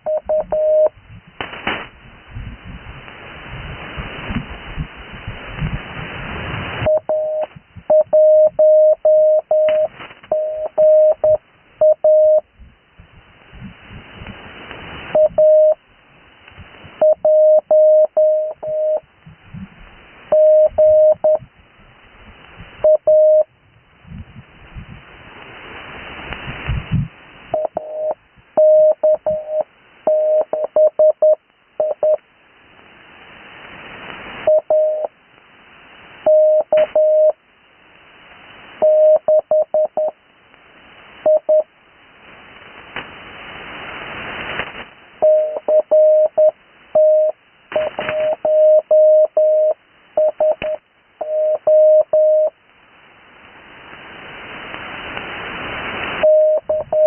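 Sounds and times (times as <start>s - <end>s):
morse code beep: 0.0s - 0.9s, 6.8s - 12.4s, 15.1s - 15.8s, 17.0s - 19.0s, 20.3s - 21.4s, 22.8s - 23.5s, 27.6s - 32.2s, 34.5s - 35.1s, 36.3s - 37.4s, 38.8s - 40.2s, 41.3s - 41.7s, 45.2s - 52.5s, 56.2s - 57.0s
radio receiver hiss: 0.0s - 23.6s, 25.0s - 57.0s.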